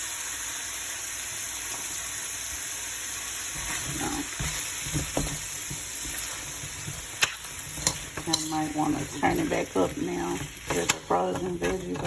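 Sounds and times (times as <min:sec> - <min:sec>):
vegetables sizzling in oil: 0:00.0 - 0:12.0
knocks and rustles in pan: 0:03.5 - 0:12.0.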